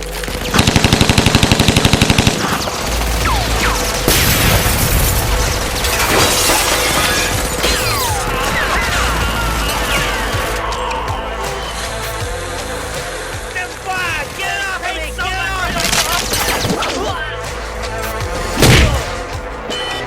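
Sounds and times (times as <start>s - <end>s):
automatic gunfire: 0.4s - 4.8s
shattering and crashing: 4.0s - 9.0s.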